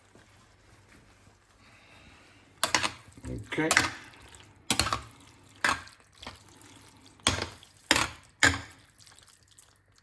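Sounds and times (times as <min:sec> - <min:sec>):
spaghetti tossed in wet sauce: 0:02.6 - 0:10.0.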